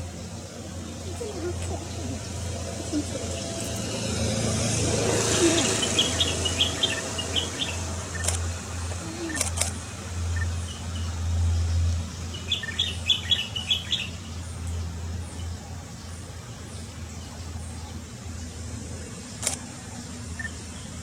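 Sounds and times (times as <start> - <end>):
steady low hum: 0.0 - 21.0
small bird chirping: 5.4 - 8.4, 11.8 - 14.5
sharp clicks: 8.1 - 8.5, 9.3 - 9.8, 19.4 - 19.6.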